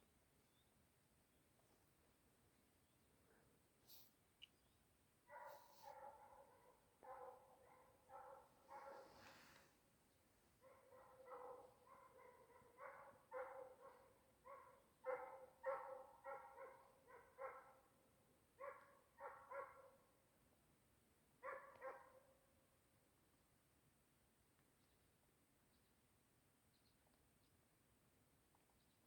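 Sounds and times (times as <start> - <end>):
distant hound barking: 5.3 - 9.4, 10.6 - 17.7.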